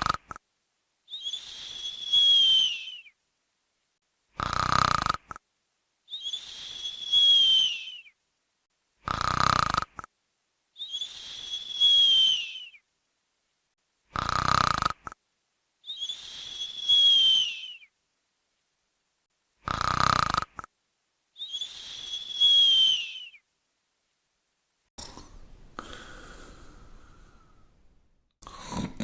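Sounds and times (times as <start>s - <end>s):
snoring with high whistle: 0.0s - 0.4s, 1.1s - 3.2s, 4.4s - 5.4s, 6.1s - 8.2s, 9.0s - 10.1s, 10.8s - 12.8s, 14.1s - 15.2s, 15.9s - 17.9s, 19.6s - 20.7s, 21.4s - 23.4s.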